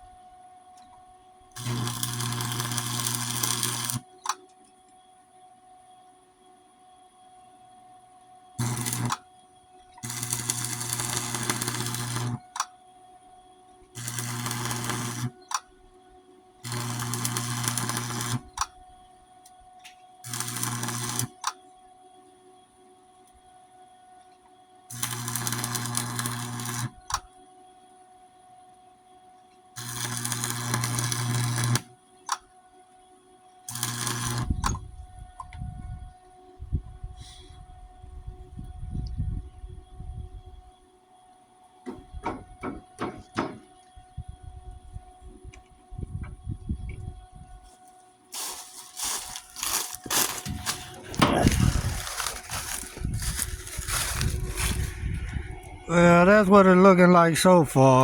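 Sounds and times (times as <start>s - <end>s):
arc welder crackling: 1.5s - 4.4s, 8.6s - 9.2s, 10.0s - 12.7s, 14.0s - 15.6s, 16.6s - 18.7s, 20.2s - 21.6s, 24.9s - 27.2s, 29.8s - 32.0s, 33.7s - 34.8s, 48.3s - 56.5s
low hum: 49.2s - 57.4s.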